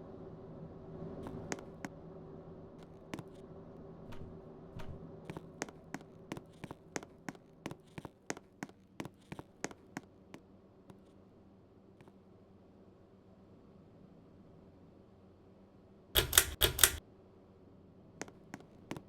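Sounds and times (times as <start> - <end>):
regular ticking: 16.2 - 17.0.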